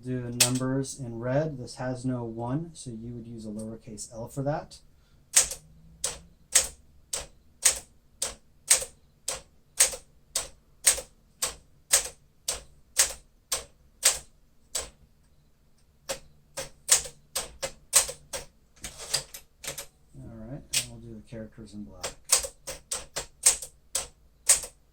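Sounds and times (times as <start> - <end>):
manual typewriter keys clacking: 0.4 - 0.6, 5.3 - 15.0, 16.1 - 19.9, 20.7 - 20.9, 22.0 - 24.9.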